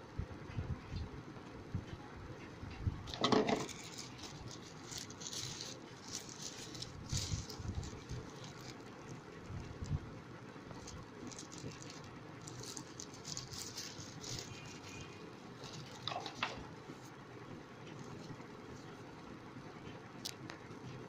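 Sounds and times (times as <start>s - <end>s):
packaging rustling: 3.1s - 10.0s, 10.7s - 17.1s.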